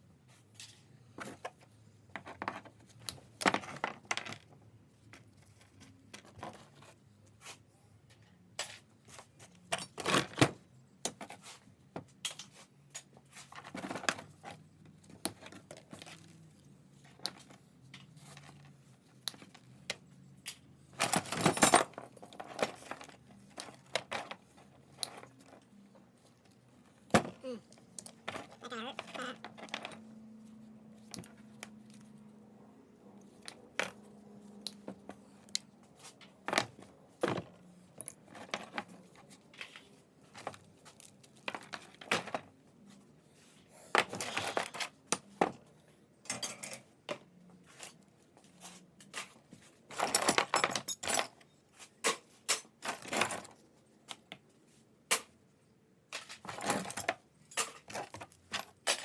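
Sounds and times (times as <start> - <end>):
scrap metal clinking into buckets: 46.2 - 46.9, 56.2 - 59.0.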